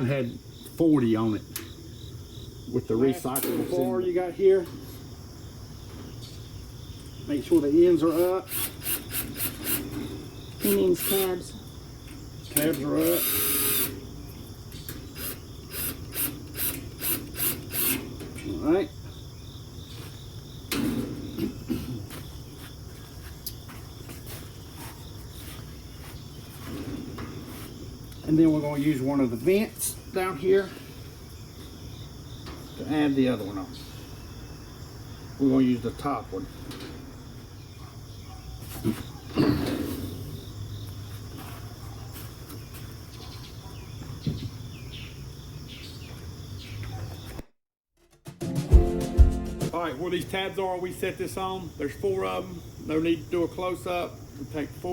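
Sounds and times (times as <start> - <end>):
crickets chirping: 0.0 - 47.4, 49.7 - 54.9
metal grill parts knocking: 20.7 - 21.8.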